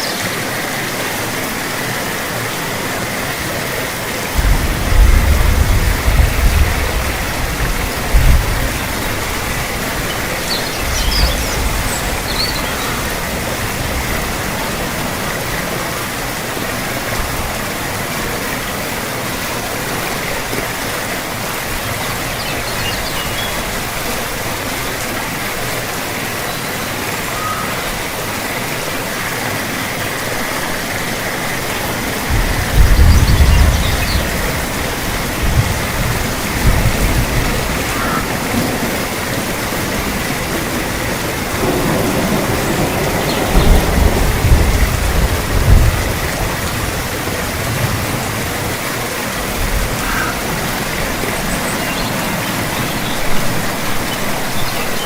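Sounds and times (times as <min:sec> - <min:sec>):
steady rain pouring: 0:00.0 - 0:55.0
thunder rolling: 0:04.3 - 0:15.7, 0:31.8 - 0:48.8.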